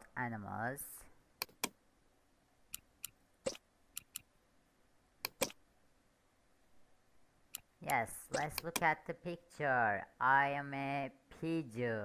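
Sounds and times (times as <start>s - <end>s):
sharp clicks: 1.4s - 1.8s, 2.7s - 4.3s, 5.2s - 5.6s, 7.5s - 8.9s.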